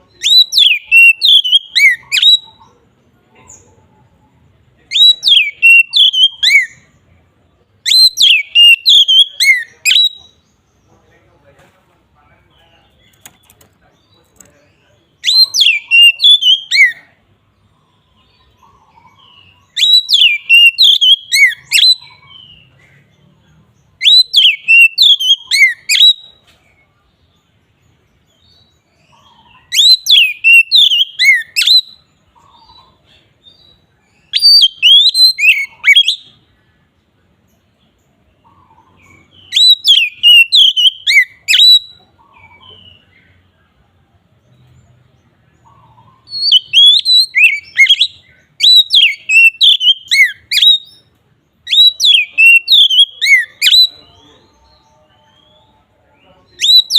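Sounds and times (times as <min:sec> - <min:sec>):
bird singing whistled phrases: 0:00.1 - 0:02.7, 0:04.9 - 0:06.9, 0:07.9 - 0:10.4, 0:15.2 - 0:17.1, 0:19.0 - 0:22.7, 0:24.0 - 0:26.4, 0:29.4 - 0:32.8, 0:33.5 - 0:36.4, 0:39.0 - 0:43.1, 0:46.0 - 0:54.7, 0:56.5 - 0:56.9.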